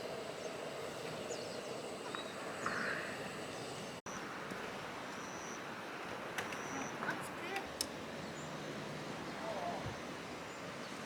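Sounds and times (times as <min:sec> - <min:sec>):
bird calling: 0:06.4 - 0:10.7.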